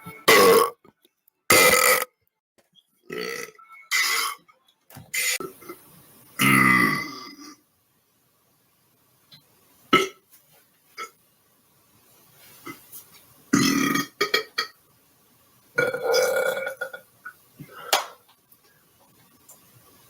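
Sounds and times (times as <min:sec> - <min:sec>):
man burping: 0:13.6 - 0:14.7.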